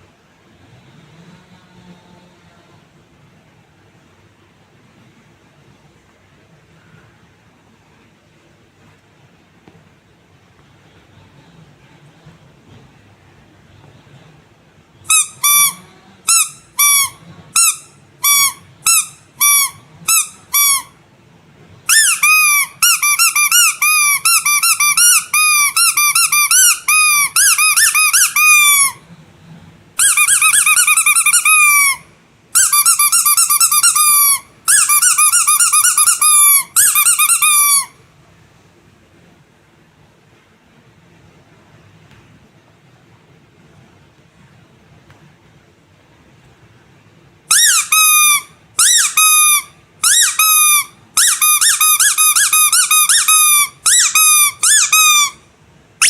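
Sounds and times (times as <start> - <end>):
squeaky toy squeaks: 15.1 - 21.0, 21.9 - 29.1, 30.0 - 38.0, 47.5 - 55.4.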